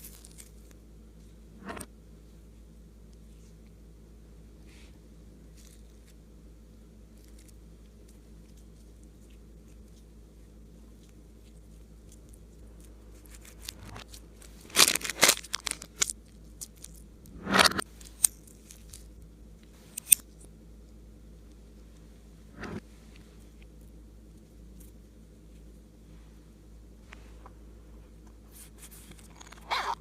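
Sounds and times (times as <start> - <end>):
slime crackling and popping: 13.1 - 17.0.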